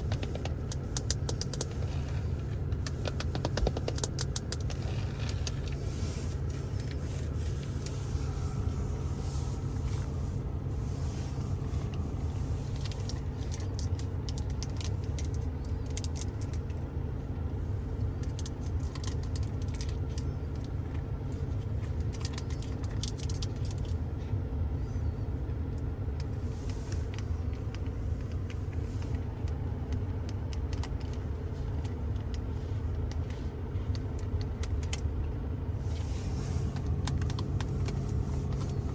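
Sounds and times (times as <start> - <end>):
light tapping on car interior: 0.0 - 10.0
steady low rumble: 0.0 - 38.9.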